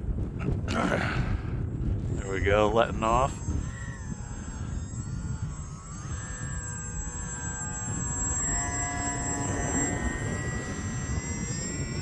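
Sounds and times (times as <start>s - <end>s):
wind buffeting microphone: 0.0s - 12.0s
electric motor and propeller whining: 1.6s - 12.0s.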